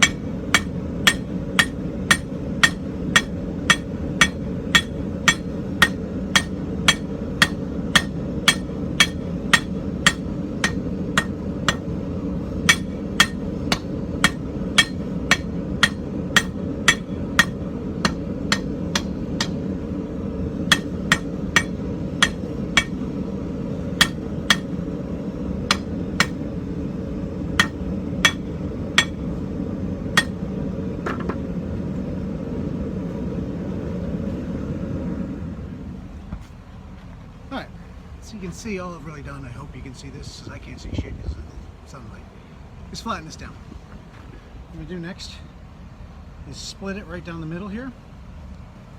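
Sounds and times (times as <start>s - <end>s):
hammer striking iron on anvil: 0.0s - 12.0s, 12.6s - 19.7s, 20.7s - 23.1s, 24.0s - 24.8s, 25.7s - 26.5s, 27.6s - 29.3s, 30.2s - 31.4s
steady low rumble: 0.0s - 48.9s.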